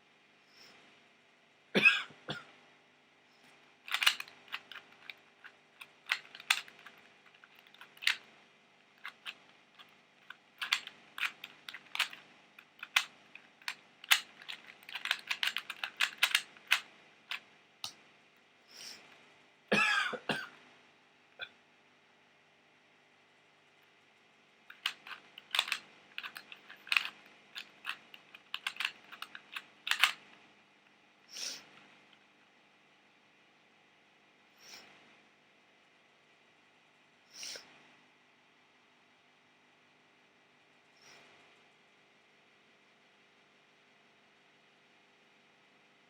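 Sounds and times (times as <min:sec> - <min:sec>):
puzzle cube clicking: 0:03.9 - 0:08.3, 0:08.9 - 0:18.0, 0:24.7 - 0:30.3.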